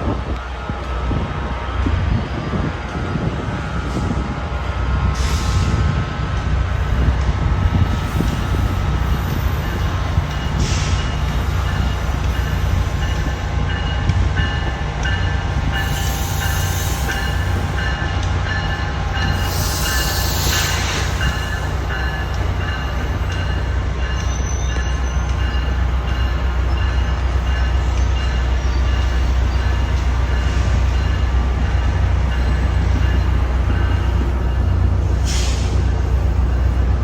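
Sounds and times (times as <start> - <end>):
train engine rumble: 0.0 - 37.0
air hissing: 19.4 - 21.5, 35.2 - 35.9.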